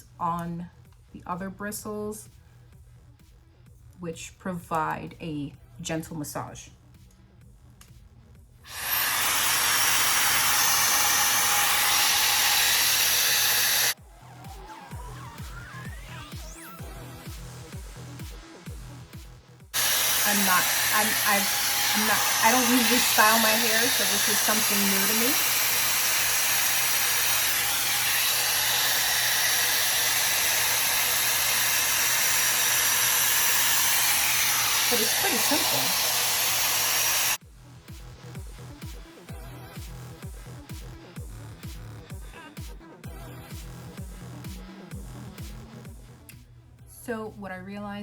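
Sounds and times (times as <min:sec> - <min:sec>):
hair dryer blowing air: 0:08.7 - 0:17.0, 0:19.8 - 0:37.4
electronic music: 0:13.9 - 0:19.4.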